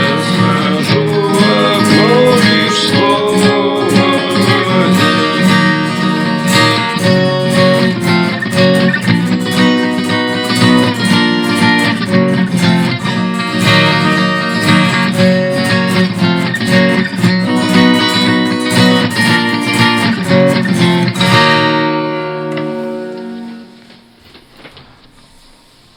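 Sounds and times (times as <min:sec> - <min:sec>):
guitar strumming: 0:00.0 - 0:25.4.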